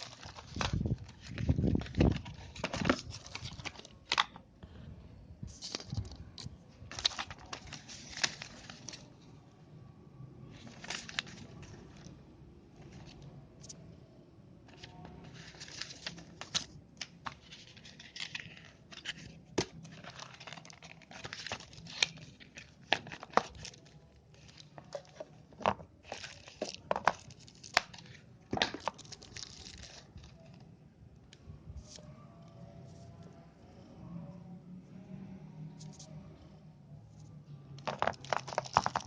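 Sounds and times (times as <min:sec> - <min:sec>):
packaging being torn and crinkled: 0:15.4 - 0:25.0, 0:26.1 - 0:30.4.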